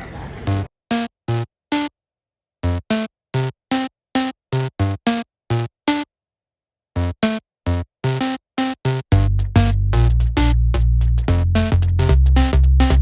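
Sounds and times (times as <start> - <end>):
clipped synth stabs: 9.1 - 13.0.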